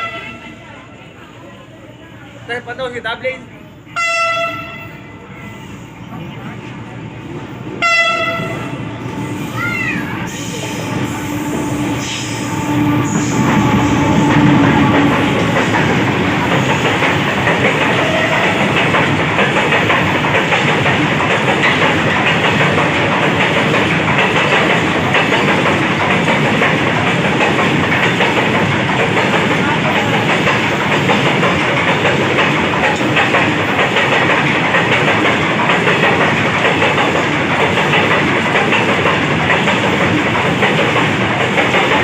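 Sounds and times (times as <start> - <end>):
locomotive horn blasts: 4.0 - 5.2, 7.8 - 8.8
train wheels clattering on rails: 6.2 - 42.0.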